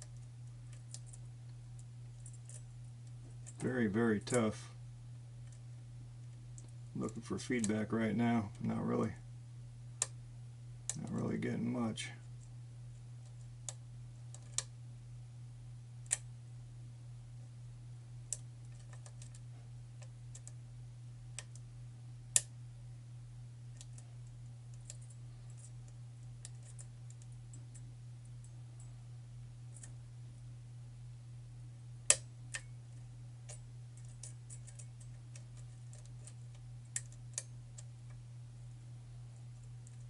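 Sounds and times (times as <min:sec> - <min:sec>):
steady low hum: 0:00.0 - 0:40.0
lock picking metallic clicks: 0:33.5 - 0:37.9.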